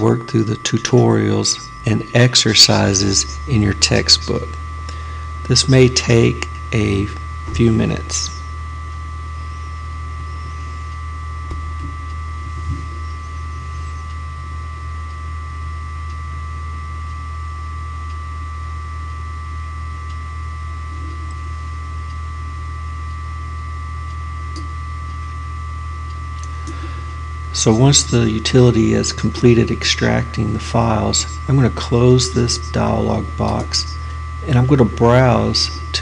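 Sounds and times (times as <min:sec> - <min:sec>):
electrical hum: 0:00.0 - 0:36.0.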